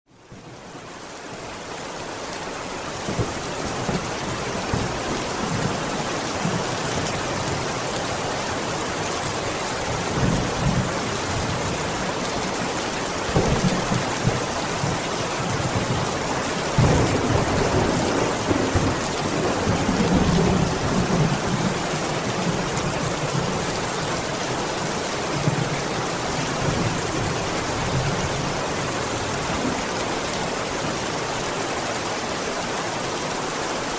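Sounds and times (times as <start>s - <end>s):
heavy rain on a window: 0.1s - 33.9s
rolling thunder: 13.2s - 16.1s, 16.7s - 23.6s.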